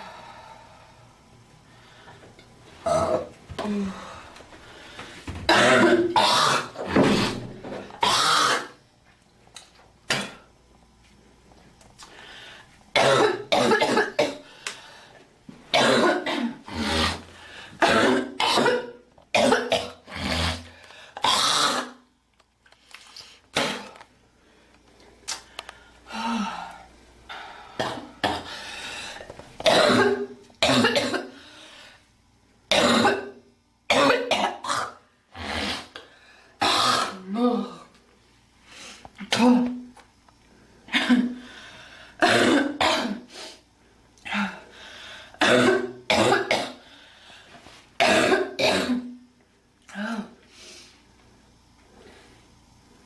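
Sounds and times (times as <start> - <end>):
girl coughing: 5.5 - 6.8, 13.0 - 14.4, 15.8 - 17.0, 17.8 - 20.0, 29.7 - 31.4, 32.7 - 33.3, 33.9 - 35.0, 39.2 - 39.8, 40.9 - 41.4, 42.2 - 43.3, 45.4 - 46.8, 48.0 - 49.2
girl clearing throat: 5.5 - 7.4, 29.7 - 31.3.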